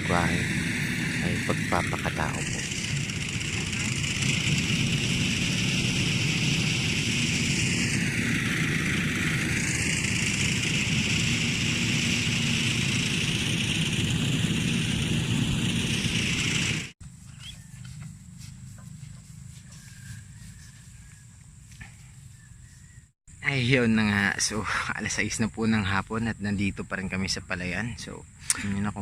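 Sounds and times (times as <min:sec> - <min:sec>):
small engine running: 0:00.0 - 0:22.1.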